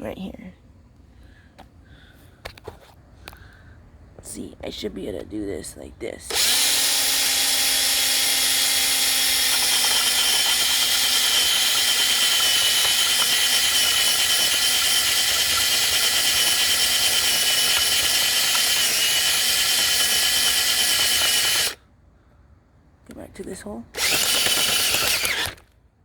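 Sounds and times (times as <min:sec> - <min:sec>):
cordless drill motor whine: 0:06.3 - 0:21.8, 0:24.0 - 0:25.7.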